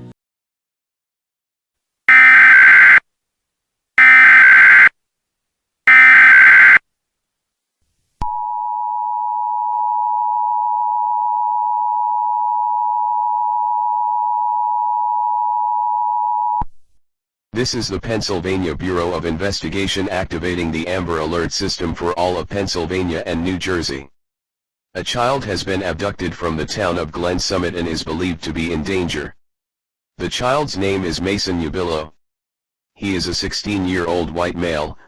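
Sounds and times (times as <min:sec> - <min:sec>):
shrill two-tone attention signal: 0:02.1 - 0:03.0, 0:04.0 - 0:04.9, 0:05.9 - 0:06.8.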